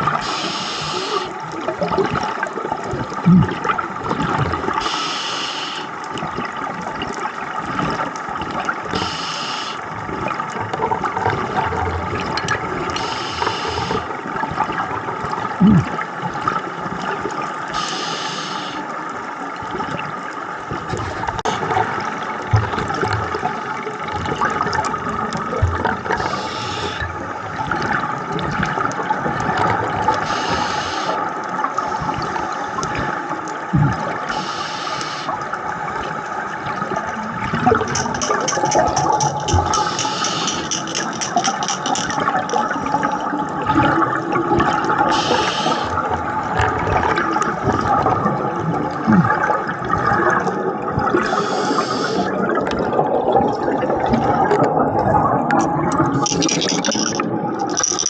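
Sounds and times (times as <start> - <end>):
diver exhaling bubbles underwater: 0.0 - 4.9, 15.4 - 16.6, 33.7 - 34.5, 42.2 - 57.7
steady watery rush: 0.0 - 58.0.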